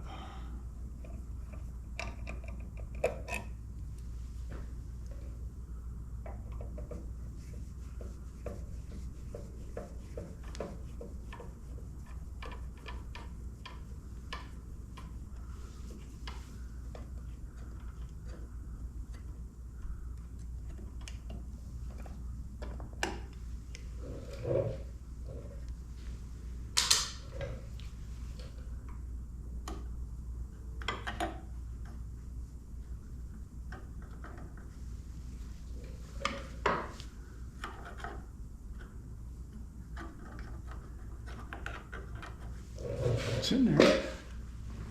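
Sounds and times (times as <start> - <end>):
steady low hum: 0.0 - 44.9
clicks and knocks of parts handled: 26.8 - 27.5.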